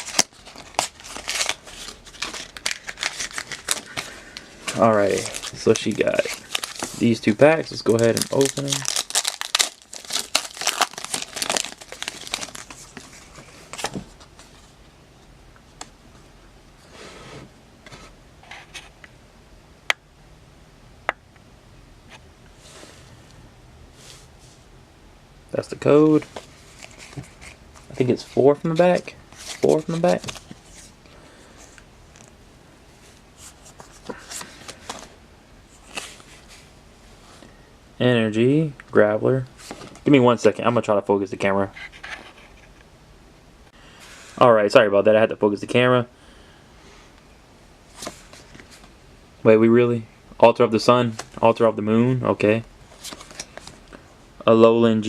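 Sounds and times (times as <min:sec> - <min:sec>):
cards being handled: 0:00.0 - 0:07.2, 0:26.2 - 0:30.9
foil wrapper crinkling and tearing: 0:00.0 - 0:13.2.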